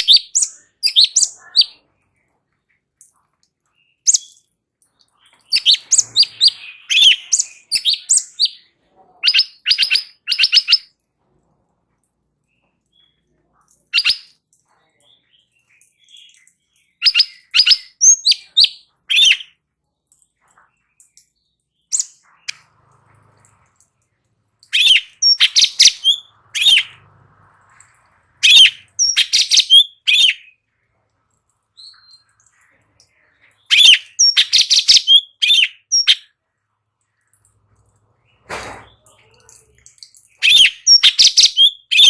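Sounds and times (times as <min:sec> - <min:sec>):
bird chirping rapidly: 0:00.0 - 0:01.8, 0:04.0 - 0:04.4, 0:05.4 - 0:10.9, 0:13.9 - 0:14.3, 0:17.0 - 0:19.5, 0:21.9 - 0:22.6, 0:24.6 - 0:27.1, 0:28.4 - 0:30.6, 0:33.6 - 0:36.3, 0:40.3 - 0:42.0.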